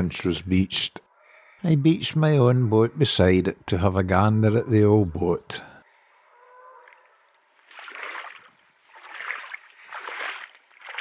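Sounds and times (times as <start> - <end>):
small waves lapping: 6.8 - 11.0.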